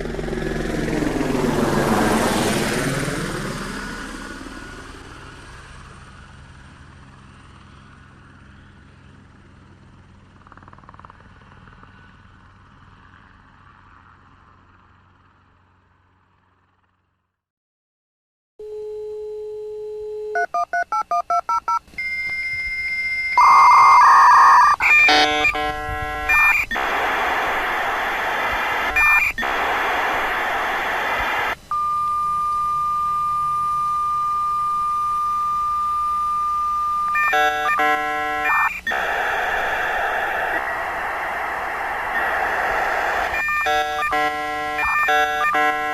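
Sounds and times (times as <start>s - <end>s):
dial tone: 18.6s - 27.0s, 31.7s - 39.2s, 43.3s - 45.9s
touch-tone dialling: 18.6s - 40.6s, 43.1s - 45.9s
modem answer tone: 18.6s - 40.7s, 43.3s - 45.9s
modem screeching handshake: 21.5s - 31.6s, 36.9s - 45.9s.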